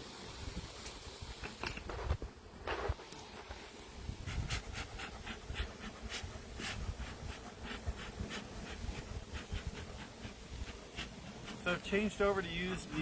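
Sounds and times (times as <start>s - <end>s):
wind rumbling on microphone: 0.1s - 12.0s
honeybees buzzing: 1.8s - 13.0s
short hissing bursts: 2.8s - 13.0s.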